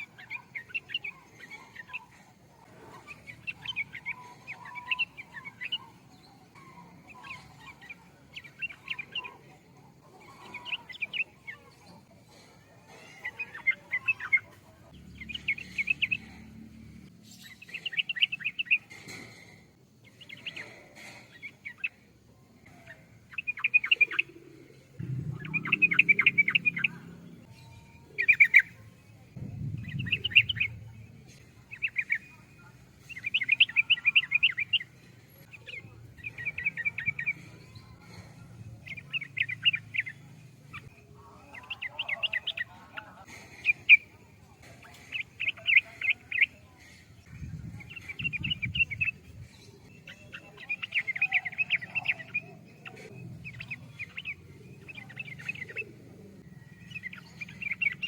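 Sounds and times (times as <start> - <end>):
bulbul singing: 0.0 - 58.0
low rumbles: 25.0 - 27.5, 29.3 - 31.4.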